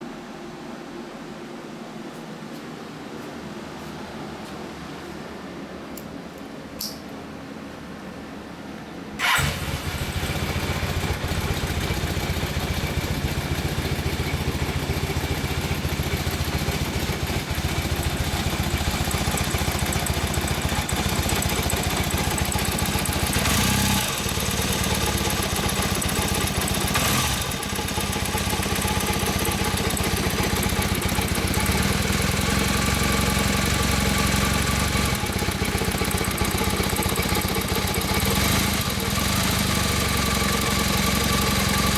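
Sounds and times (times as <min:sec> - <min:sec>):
motorcycle engine idling: 0:09.2 - 0:41.9.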